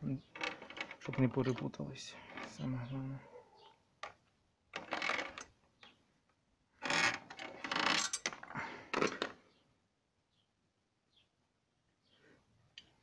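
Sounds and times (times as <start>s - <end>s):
small metal parts clinking: 7.7s - 8.4s.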